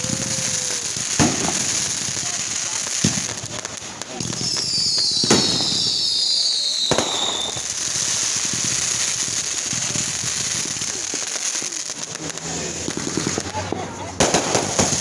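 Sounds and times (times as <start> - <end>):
firework whistles sliding down: 0.0 - 3.3, 4.4 - 13.6
dense firework crackling: 0.0 - 15.0
firework bangs: 0.0 - 15.0.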